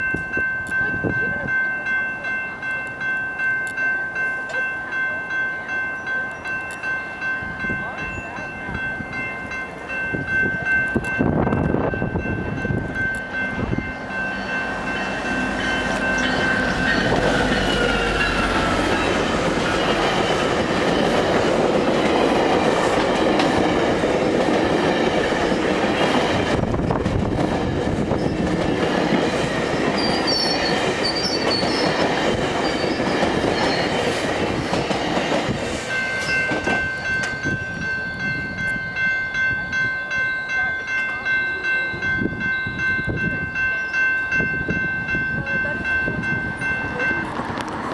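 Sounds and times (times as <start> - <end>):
level crossing warning bells: 0.0 - 47.9
train rumbling over rails: 7.1 - 47.9
train wheel squeal: 14.3 - 20.6, 29.8 - 34.9.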